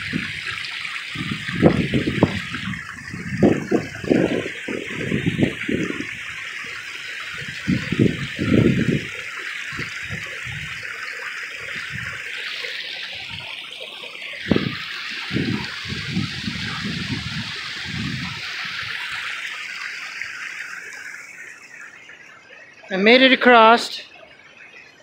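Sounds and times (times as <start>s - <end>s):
creek rushing: 0.0s - 24.3s.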